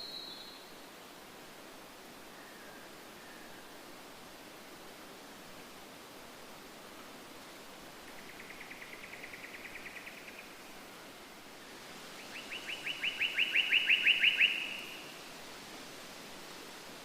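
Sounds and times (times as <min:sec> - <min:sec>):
steady background hiss: 0:00.0 - 0:17.0
songbird trilling: 0:12.3 - 0:15.1.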